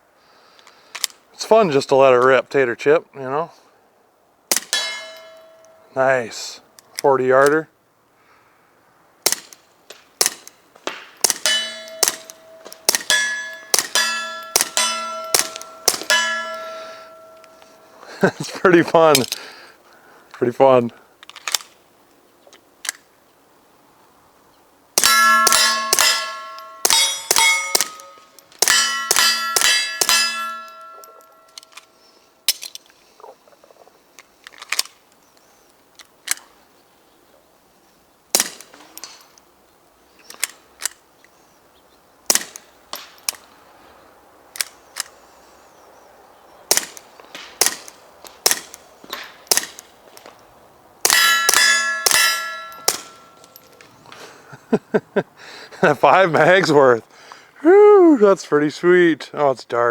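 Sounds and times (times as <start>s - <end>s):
suppressed pistol shots: 4.5s - 5.3s, 9.2s - 9.6s, 10.2s - 17.4s, 25.0s - 31.1s, 38.3s - 38.8s, 42.3s - 43.1s, 46.7s - 48.8s, 49.4s - 49.9s
metallic ringing of steel targets: 4.5s - 6.2s, 11.2s - 18.0s, 25.0s - 31.8s, 51.0s - 53.7s.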